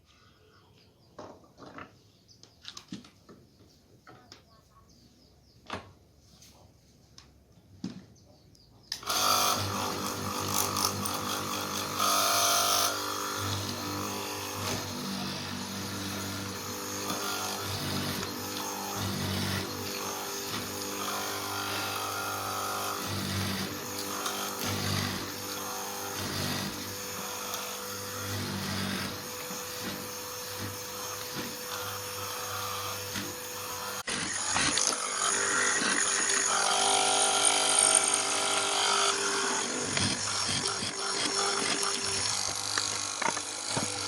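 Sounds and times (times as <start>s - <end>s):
louder power tool: 8.9s - 44.0s
power tools running on wood: 8.9s - 44.0s.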